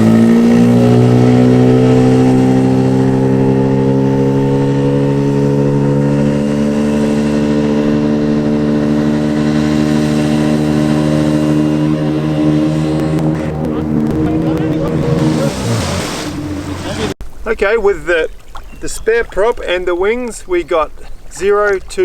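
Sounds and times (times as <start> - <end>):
outboard motor running hard: 0.0 - 17.2.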